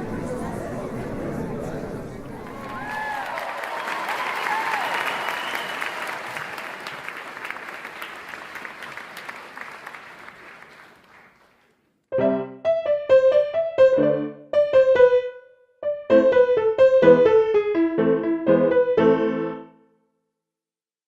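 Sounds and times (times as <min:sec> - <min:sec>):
audience applause: 0:00.0 - 0:11.9
piano playing chords: 0:12.1 - 0:19.9.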